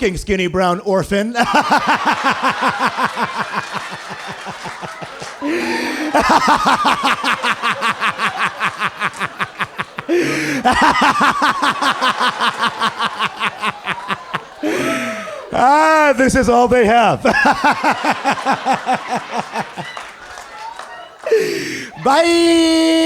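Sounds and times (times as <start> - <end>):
man's exaggerated laugh: 1.4 - 15.8, 17.2 - 20.0
gasping in-breaths: 5.4 - 6.3, 10.0 - 10.8, 14.6 - 15.6, 21.2 - 22.0.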